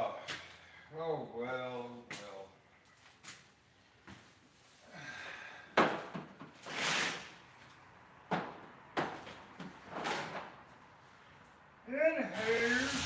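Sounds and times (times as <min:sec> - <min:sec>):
short hiss: 0:06.6 - 0:07.4, 0:12.4 - 0:13.0.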